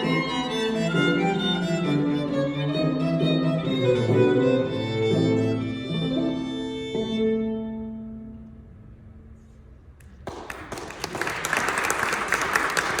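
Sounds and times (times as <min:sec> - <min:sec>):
bowed violin notes: 0:00.0 - 0:08.7.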